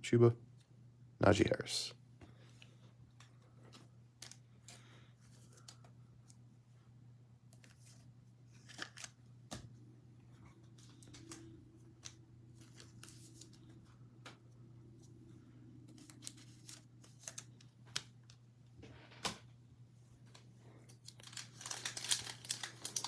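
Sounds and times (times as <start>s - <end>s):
cards and foil wrappers rustling: 3.1s - 6.3s, 7.6s - 14.0s, 15.8s - 18.4s, 20.2s - 23.0s.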